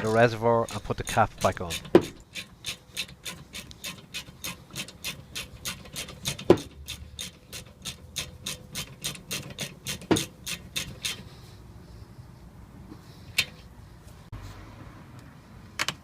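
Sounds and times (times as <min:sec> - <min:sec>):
ratchet clicking rapidly: 0:00.0 - 0:11.3.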